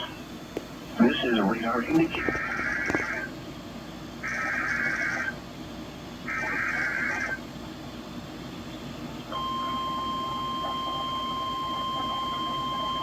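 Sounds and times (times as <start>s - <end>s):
steady warning alarm tone: 4.2s - 5.4s, 9.3s - 13.0s.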